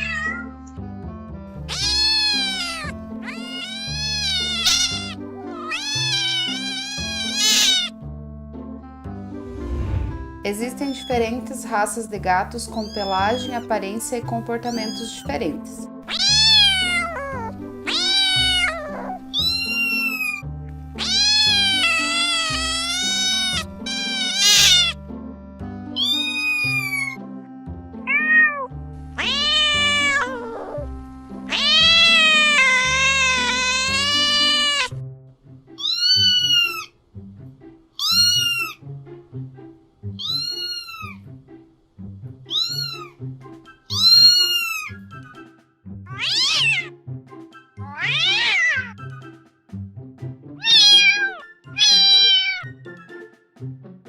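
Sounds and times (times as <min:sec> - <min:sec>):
cat meowing: 0:00.0 - 0:00.5, 0:01.6 - 0:08.0, 0:10.9 - 0:11.2, 0:12.8 - 0:13.7, 0:14.7 - 0:15.3, 0:16.1 - 0:20.4, 0:21.0 - 0:25.0, 0:26.0 - 0:27.2, 0:28.0 - 0:30.9, 0:31.5 - 0:35.0, 0:35.8 - 0:36.9, 0:38.0 - 0:38.8, 0:40.1 - 0:41.2, 0:42.5 - 0:43.2, 0:43.9 - 0:45.1, 0:46.1 - 0:47.0, 0:47.8 - 0:49.1, 0:50.6 - 0:52.8
background music: 0:00.0 - 0:54.0.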